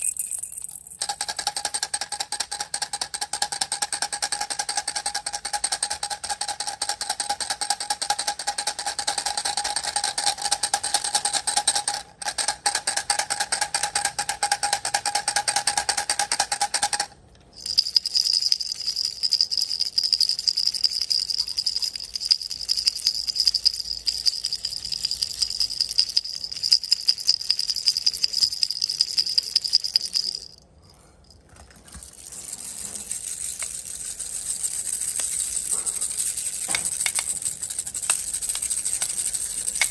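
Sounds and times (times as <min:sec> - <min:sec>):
baby rattles shaken: 0:00.0 - 0:39.9.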